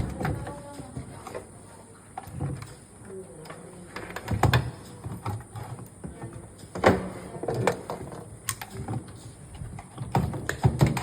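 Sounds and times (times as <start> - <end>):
knocks and clicks of tools: 4.0 - 11.0.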